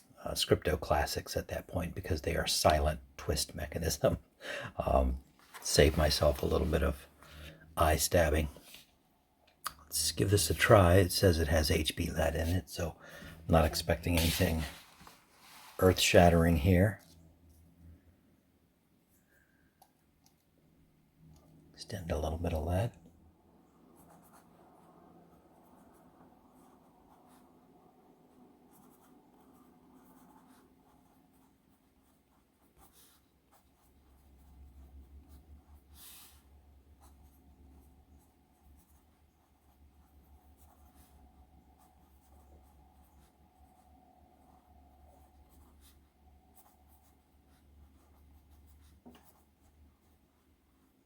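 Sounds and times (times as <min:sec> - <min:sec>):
pencil writing on paper: 0:28.7 - 0:51.0.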